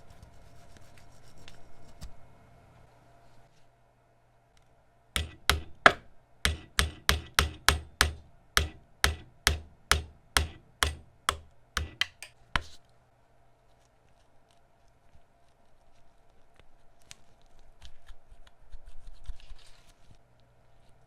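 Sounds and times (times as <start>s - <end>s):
hammer striking: 5.2s - 12.7s.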